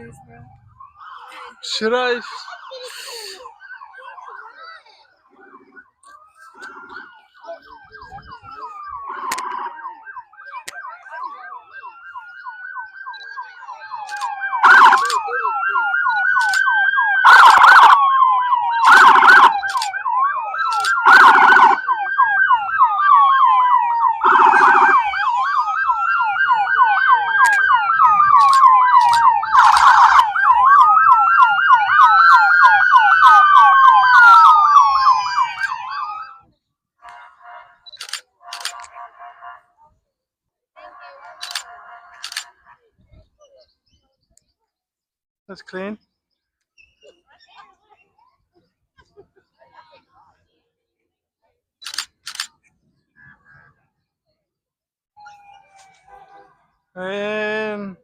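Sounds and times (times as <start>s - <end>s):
emergency siren wailing: 0.0s - 36.5s, 40.8s - 42.6s, 55.2s - 57.0s.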